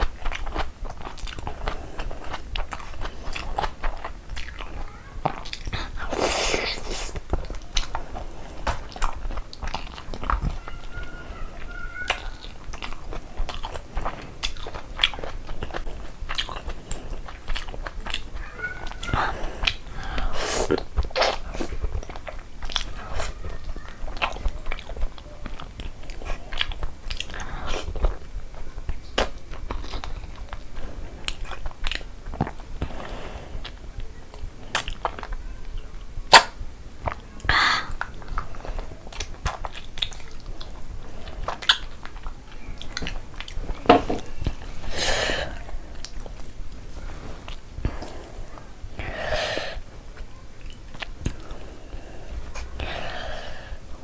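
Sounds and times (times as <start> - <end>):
wet messy chewing: 0.0 - 35.4, 36.3 - 54.0
mouth clicks and smacks: 36.3 - 40.8
breathy sounds: 43.8 - 46.0, 51.4 - 53.9.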